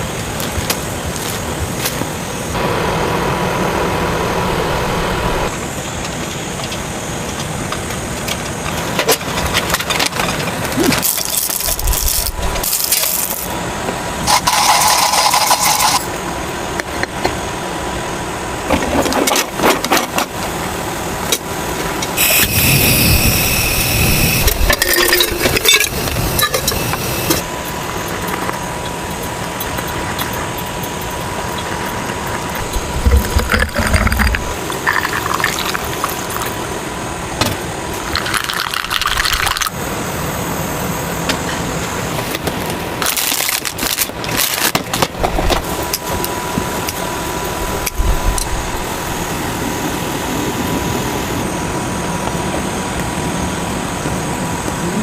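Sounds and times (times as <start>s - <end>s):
rustling and scraping: 31.7s - 34.6s.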